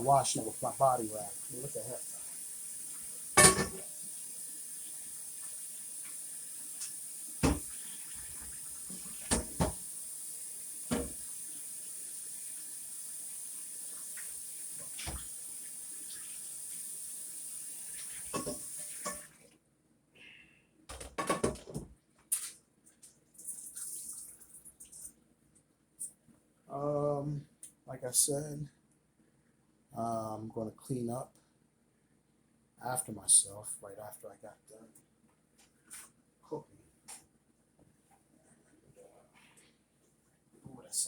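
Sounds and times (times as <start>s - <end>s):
faucet running into sink: 0.0s - 19.4s, 23.4s - 25.1s
pan clanking: 3.4s - 3.9s.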